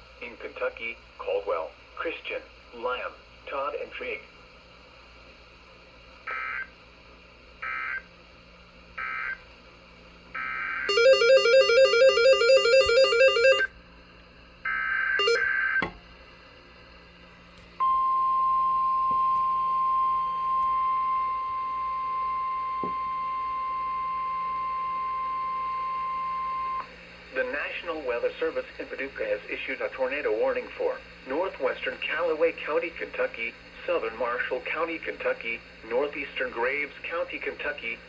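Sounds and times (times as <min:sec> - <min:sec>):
digital data tone bursts: 0:10.9 - 0:13.7, 0:15.2 - 0:15.4
fast warbling tone: 0:10.9 - 0:13.7
steady warning alarm tone: 0:10.9 - 0:13.7, 0:15.2 - 0:16.0.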